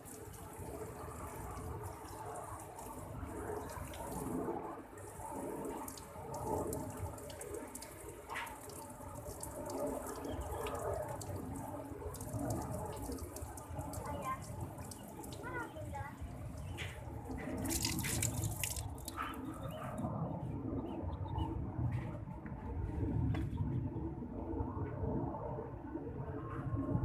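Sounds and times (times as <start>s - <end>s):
running water: 0.0s - 19.8s
water splashing and dripping: 0.0s - 20.0s.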